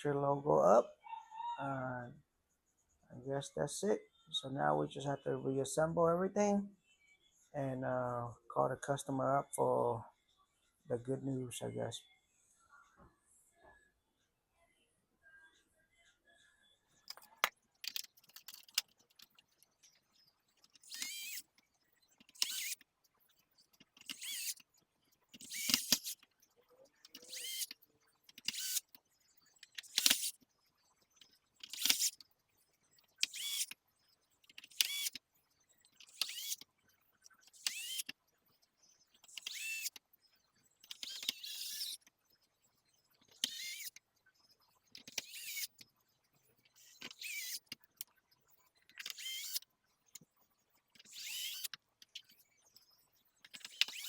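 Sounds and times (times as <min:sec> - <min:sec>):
electric screwdriver whirring: 0:20.8 - 0:21.4, 0:22.4 - 0:22.8, 0:24.1 - 0:24.6, 0:25.4 - 0:26.2, 0:27.2 - 0:27.7, 0:28.4 - 0:28.9, 0:29.9 - 0:30.3, 0:31.7 - 0:32.2, 0:33.2 - 0:33.7, 0:34.7 - 0:35.2, 0:36.1 - 0:36.6, 0:37.6 - 0:38.1, 0:39.4 - 0:39.9, 0:40.9 - 0:42.0, 0:43.4 - 0:43.9, 0:45.1 - 0:45.7, 0:47.1 - 0:47.6, 0:49.0 - 0:49.6, 0:51.0 - 0:51.8, 0:53.6 - 0:54.0.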